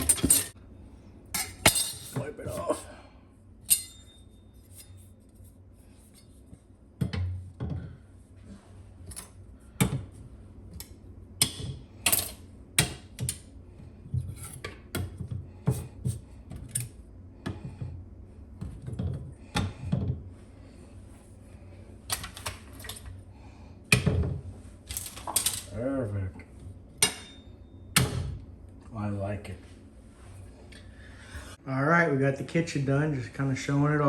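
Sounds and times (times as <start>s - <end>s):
utensils clacking on a counter: 0.0s - 0.6s, 1.4s - 2.8s, 3.7s - 5.0s, 10.8s - 13.4s, 23.9s - 25.7s.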